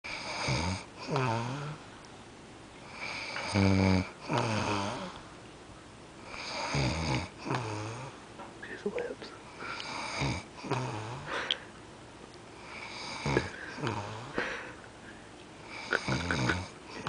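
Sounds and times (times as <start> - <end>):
man snoring loudly: 0.1 - 1.8, 3.0 - 5.2, 6.3 - 8.1, 9.8 - 11.3, 12.7 - 14.5, 15.7 - 17.0.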